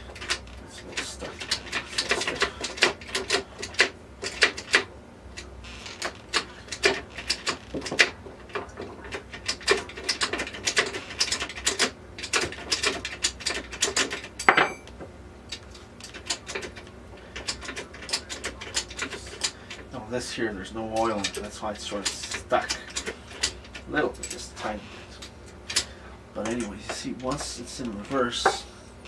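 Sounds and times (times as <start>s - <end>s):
sharp metal knock ringing: 14.4s - 14.9s.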